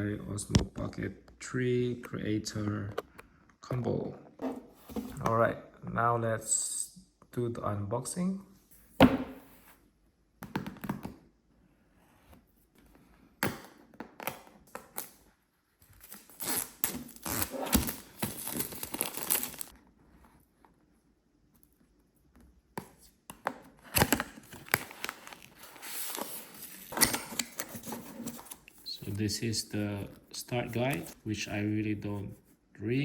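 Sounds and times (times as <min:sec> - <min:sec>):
box packaging tearing and rustling: 0:16.0 - 0:19.7, 0:23.9 - 0:28.6.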